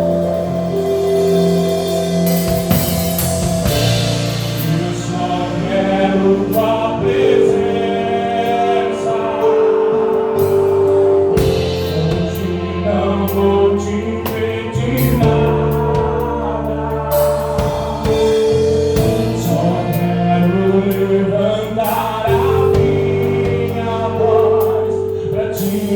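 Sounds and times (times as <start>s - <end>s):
drum and cymbal hits: 0.0s - 7.7s, 10.4s - 13.4s, 17.1s - 21.2s
bass guitar: 0.0s - 25.9s
voices singing held notes: 2.1s - 25.9s.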